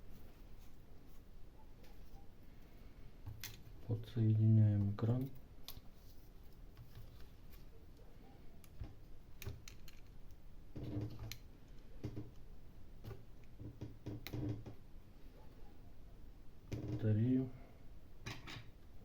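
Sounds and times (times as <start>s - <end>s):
small tools clicking and tapping: 8.6s - 14.6s.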